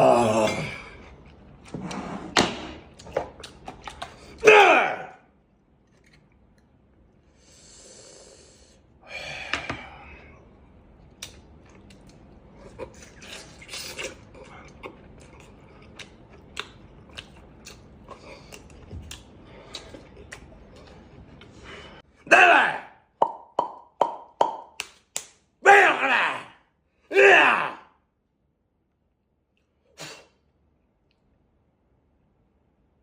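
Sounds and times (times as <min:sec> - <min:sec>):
man chewing: 0:02.9 - 0:04.4, 0:11.0 - 0:22.0
breathy sound: 0:07.3 - 0:10.5.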